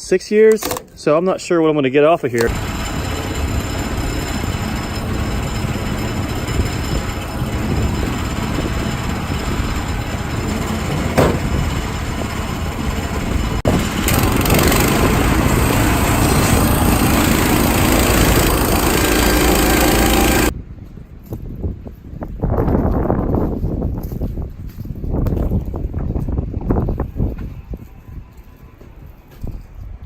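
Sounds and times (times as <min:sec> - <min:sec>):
sawmill gas engine running: 0:02.3 - 0:20.5.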